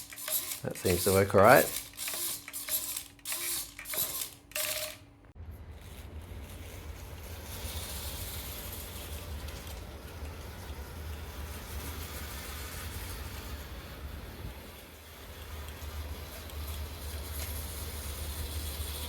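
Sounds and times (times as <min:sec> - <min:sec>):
steering servo whirring: 0:00.0 - 0:05.0
low rumble with hiss: 0:05.1 - 0:19.0.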